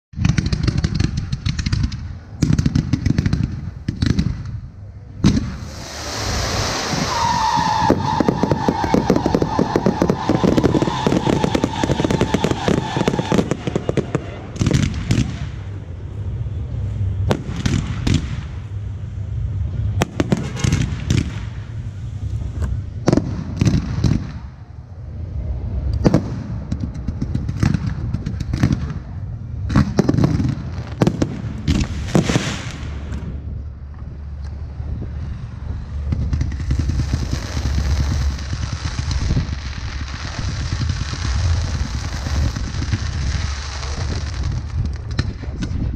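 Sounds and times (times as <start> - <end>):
fireworks bangs: 0.2 - 16.0, 17.0 - 33.6, 35.1 - 45.9
fireworks crackling: 0.2 - 24.8, 25.4 - 45.9
high whistle: 5.7 - 13.4.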